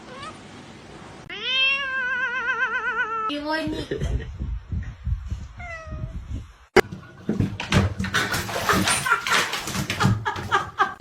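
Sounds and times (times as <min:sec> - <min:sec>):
cat meowing: 0:01.3 - 0:03.3, 0:05.6 - 0:06.1.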